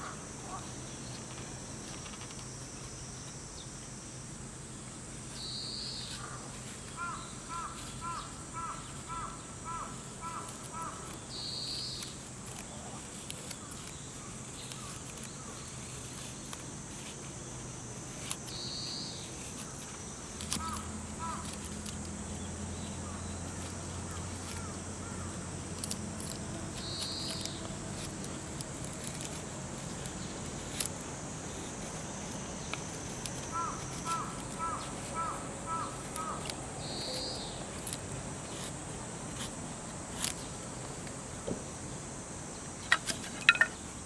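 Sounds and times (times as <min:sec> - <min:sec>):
insects chirring: 0:00.0 - 0:44.0
birds calling: 0:05.4 - 0:12.1, 0:32.6 - 0:38.0.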